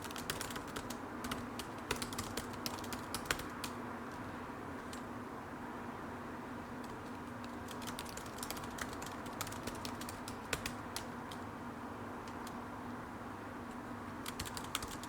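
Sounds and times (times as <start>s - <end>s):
keyboard typing: 0.0s - 3.8s, 6.8s - 11.4s, 12.2s - 12.6s, 14.2s - 15.0s
steady background hum: 0.0s - 15.0s.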